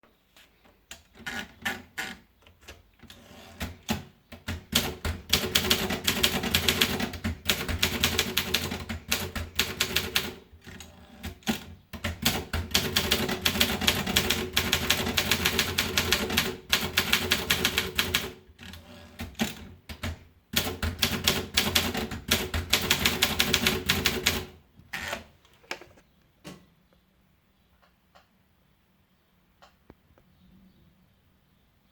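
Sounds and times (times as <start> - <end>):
typewriter typing: 3.0 - 25.2.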